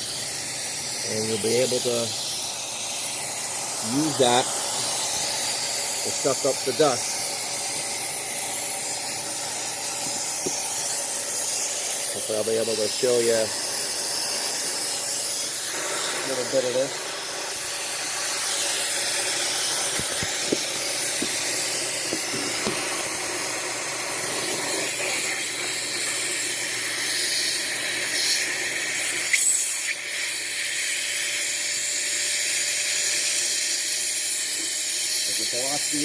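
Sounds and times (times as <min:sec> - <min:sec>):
vacuum cleaner hissing: 0:00.0 - 0:36.0.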